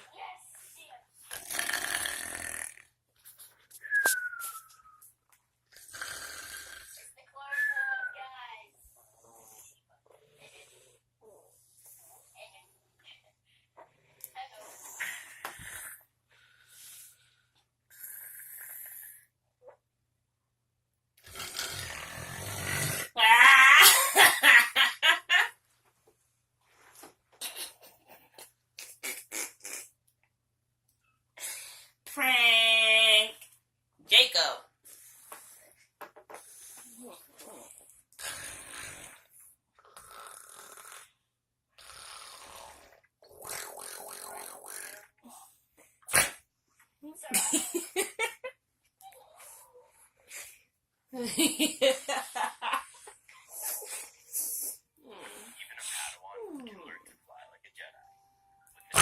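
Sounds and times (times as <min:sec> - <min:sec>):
woman snoring: 0:01.3 - 0:02.9, 0:05.8 - 0:07.1, 0:21.2 - 0:23.2, 0:36.9 - 0:39.3, 0:39.9 - 0:41.2, 0:41.8 - 0:45.5, 0:55.0 - 0:55.6.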